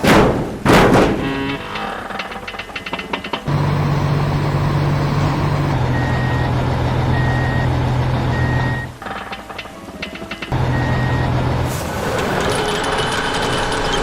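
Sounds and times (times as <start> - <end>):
heavy vehicle engine running: 0.7 - 14.0
reversing alarm beeps: 4.7 - 8.9, 10.6 - 11.4.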